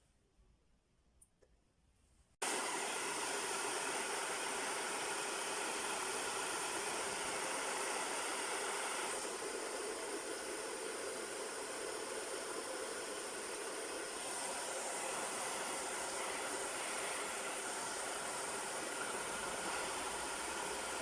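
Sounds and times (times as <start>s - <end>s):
hair dryer blowing: 2.4s - 21.0s.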